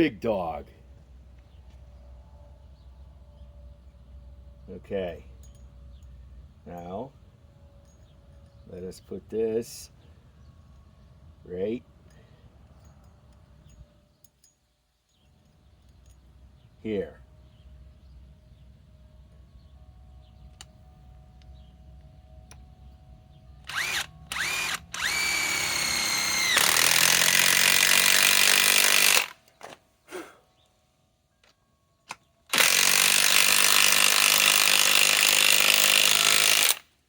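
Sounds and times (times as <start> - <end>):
impact wrench hammering: 23.7 - 29.4.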